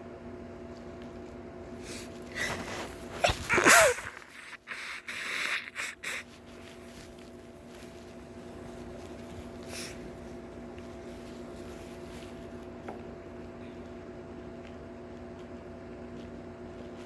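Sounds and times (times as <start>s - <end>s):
person sneezing: 2.3s - 6.3s.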